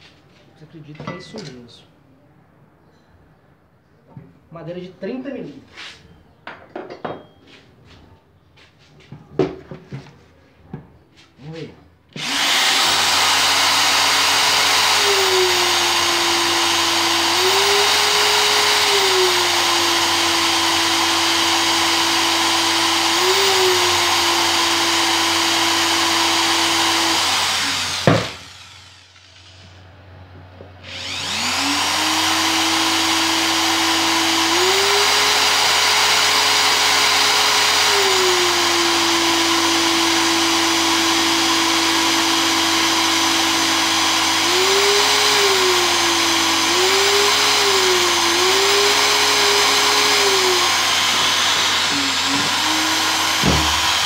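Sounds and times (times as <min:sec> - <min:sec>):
electric drill boring through wood: 0:12.2 - 0:29.8, 0:30.8 - 0:54.0.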